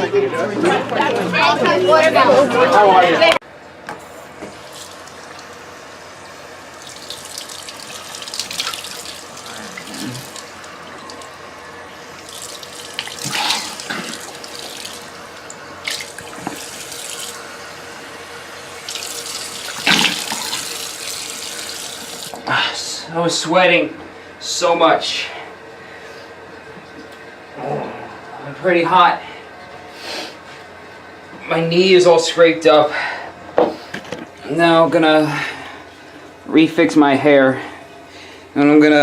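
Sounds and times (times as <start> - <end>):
tap water running into sink: 6.8 - 11.3, 12.2 - 17.4, 18.7 - 22.4.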